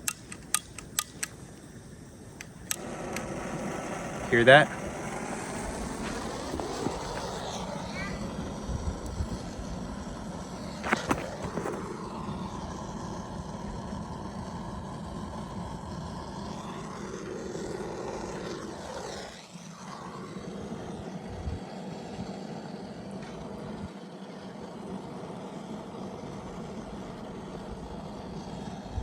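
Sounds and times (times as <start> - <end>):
sharp clicks: 0.0 - 1.6, 2.4 - 3.4
torch flame hissing: 0.0 - 29.0.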